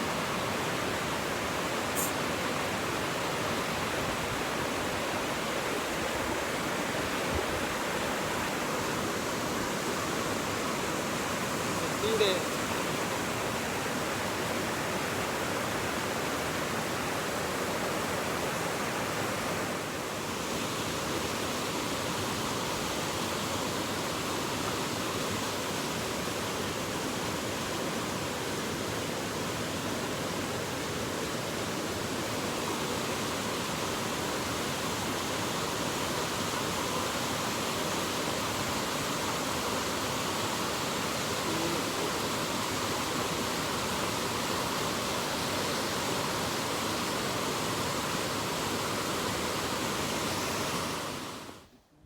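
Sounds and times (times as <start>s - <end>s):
waterfall rushing: 0.0s - 51.7s.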